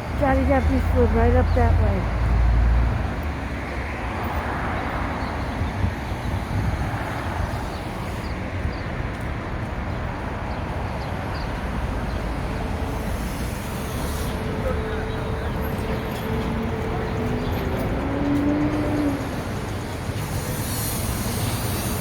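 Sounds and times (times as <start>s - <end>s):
car driving on city street: 0.0s - 22.0s.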